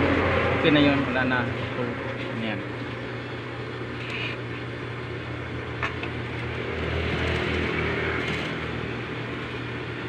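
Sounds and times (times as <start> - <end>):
sewing machine running: 6.5 - 10.0.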